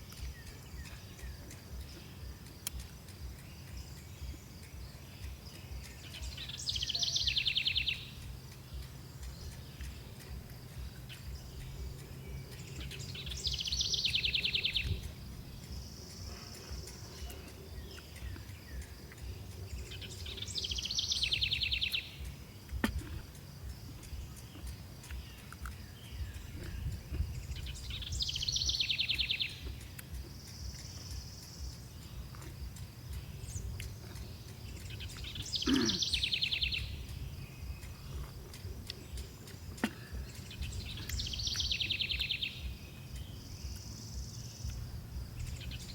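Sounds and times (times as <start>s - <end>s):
animal pulsed trill: 0.0s - 45.9s.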